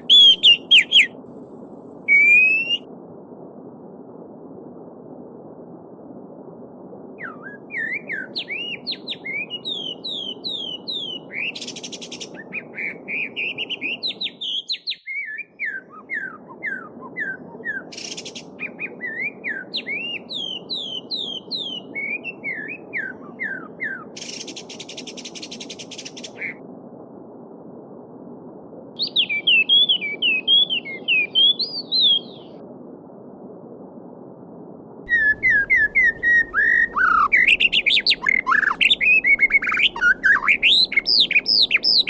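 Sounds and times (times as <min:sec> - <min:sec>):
songbirds chirping: 0:00.0 - 0:01.2, 0:29.0 - 0:32.6, 0:35.1 - 0:42.0.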